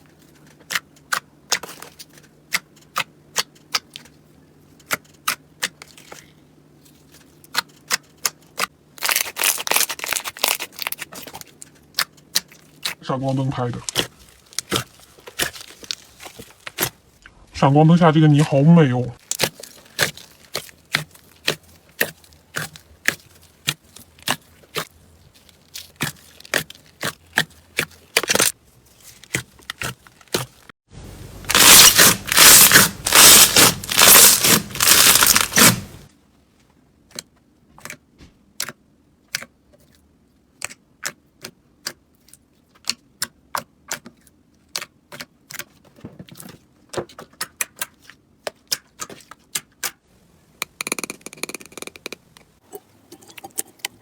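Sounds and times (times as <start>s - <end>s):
slime squished by hand crackling: 31.5s - 36.1s.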